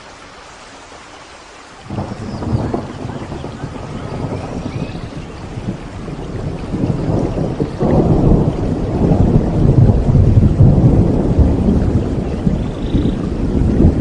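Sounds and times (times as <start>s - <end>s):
steady rain: 0.0s - 14.0s
thunder rumbling: 1.9s - 14.0s.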